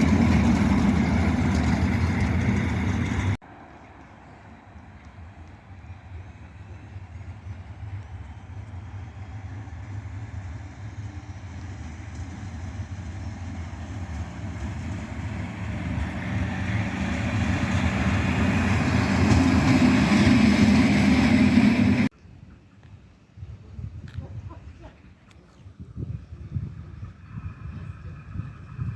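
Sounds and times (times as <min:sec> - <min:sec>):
train approaching: 0:00.0 - 0:22.1.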